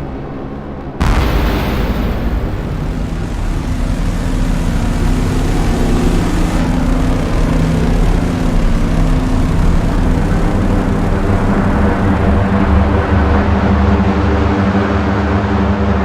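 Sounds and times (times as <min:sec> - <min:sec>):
dark synthesizer drone: 0:01.0 - 0:16.0.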